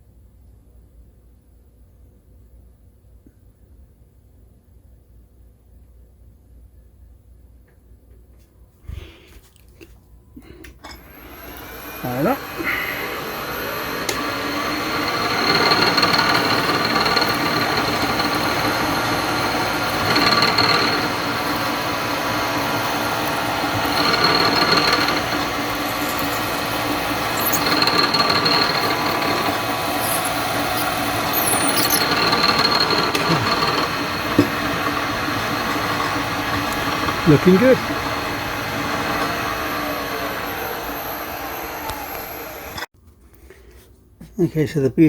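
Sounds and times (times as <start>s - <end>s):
high drill squealing: 10.9s - 42.9s
milling machine running: 11.0s - 42.9s.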